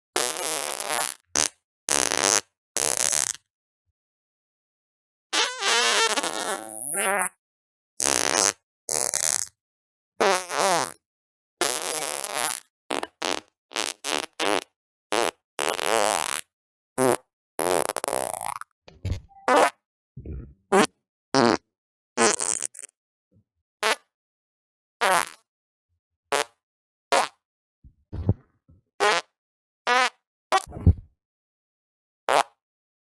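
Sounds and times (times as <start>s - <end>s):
farts: 28.0s - 29.2s, 30.6s - 31.1s.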